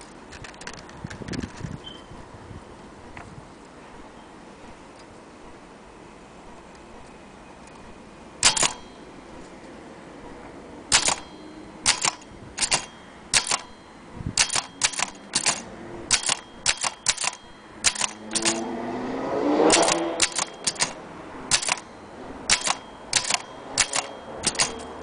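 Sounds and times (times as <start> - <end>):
typewriter keys striking: 8.4 - 8.8, 10.9 - 11.3, 11.9 - 13.7, 14.4 - 18.6, 19.7 - 21.9, 22.5 - 25.0.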